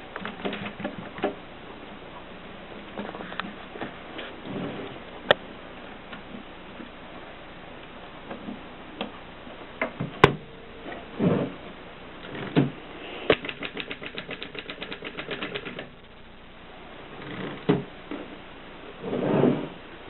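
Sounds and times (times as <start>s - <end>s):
fast run of typewriter clicks: 13.3s - 15.9s
typewriter clicks and knocks: 13.3s - 15.9s.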